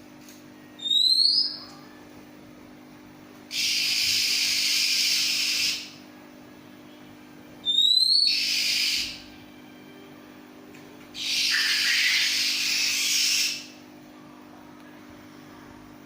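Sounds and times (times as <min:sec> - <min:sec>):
bird rising whistle: 0:00.8 - 0:01.6, 0:03.5 - 0:06.0, 0:07.6 - 0:09.2, 0:11.2 - 0:13.7.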